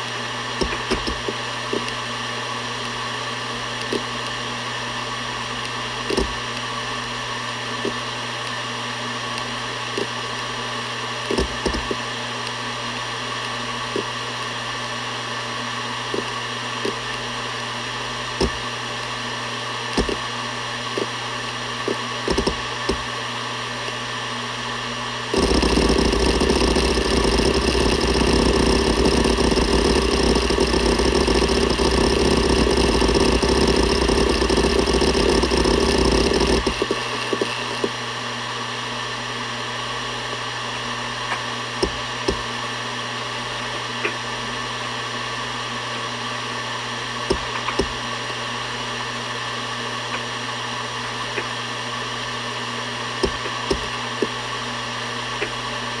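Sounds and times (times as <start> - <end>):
hard drive seek clicks: 0.0 - 8.7, 9.3 - 15.0, 15.6 - 24.1, 25.2 - 38.0, 40.9 - 44.5, 47.1 - 48.5, 51.2 - 51.7, 53.1 - 55.9
hard drive platters humming: 0.0 - 56.0
loud hard drive working noise: 0.0 - 56.0.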